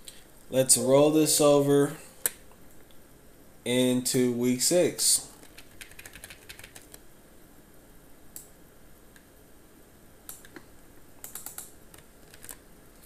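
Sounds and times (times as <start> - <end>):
computer keyboard keystrokes: 5.4 - 7.0, 11.2 - 12.6.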